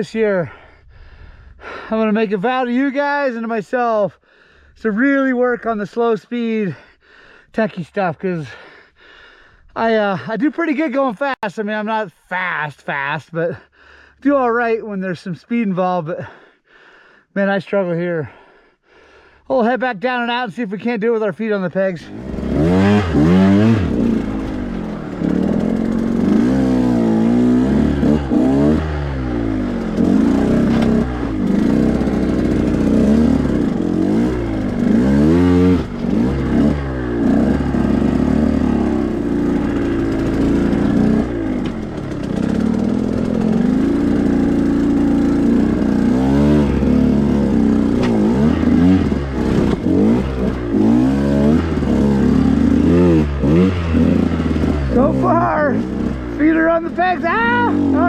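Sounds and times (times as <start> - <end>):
dirt bike engine revving: 22.0 - 58.0.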